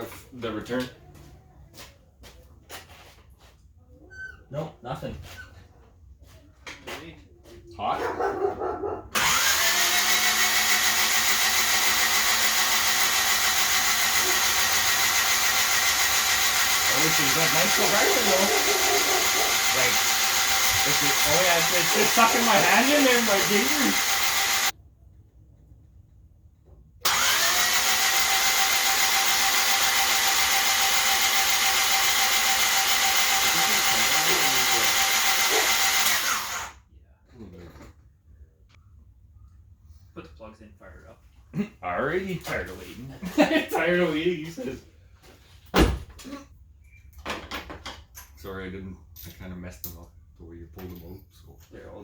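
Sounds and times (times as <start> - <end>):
starter motor whirring: 9.1 - 24.7, 27.0 - 36.8
suction device running: 9.2 - 24.7, 27.0 - 36.8.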